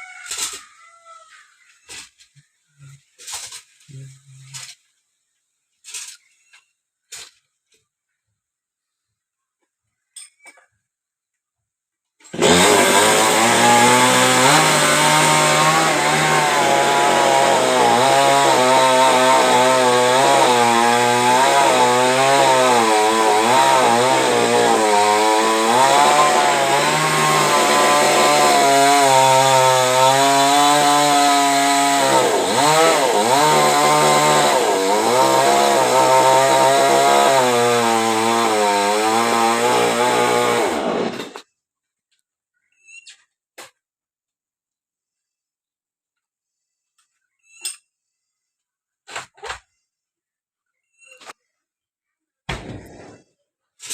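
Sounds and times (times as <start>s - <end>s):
chainsaw cutting trunk: 12.2s - 41.5s.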